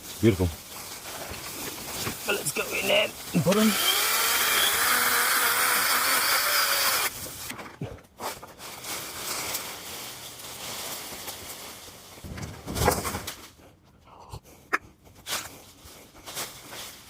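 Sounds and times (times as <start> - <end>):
outdoor noise: 0.0 - 17.0
chainsaw whining: 3.4 - 7.1.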